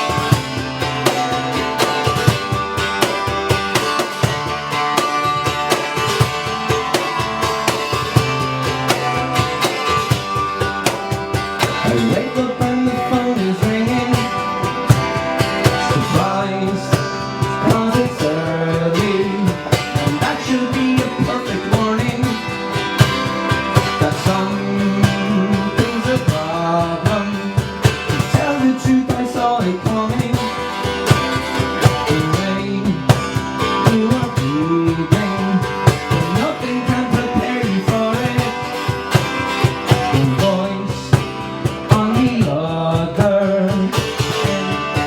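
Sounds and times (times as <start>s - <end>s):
steady drum beat: 0.0s - 45.0s
strummed guitar: 0.0s - 45.0s
person singing: 11.6s - 30.8s, 31.8s - 39.0s, 39.8s - 45.0s.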